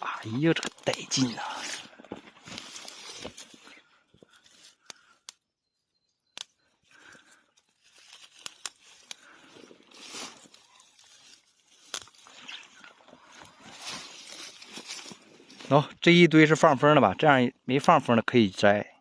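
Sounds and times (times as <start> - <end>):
rustling through undergrowth: 0.0 - 5.2, 6.5 - 15.9
plant stems snapping: 0.5 - 1.8, 4.6 - 5.4, 6.3 - 15.6.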